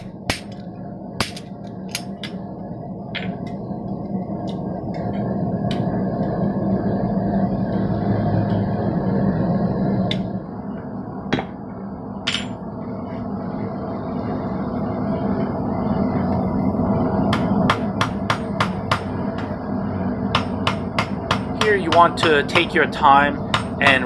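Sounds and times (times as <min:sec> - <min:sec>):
hammer striking steel on anvil: 0:00.0 - 0:00.6, 0:01.2 - 0:01.5, 0:20.3 - 0:22.5, 0:23.5 - 0:24.0
steady hum: 0:00.0 - 0:24.0.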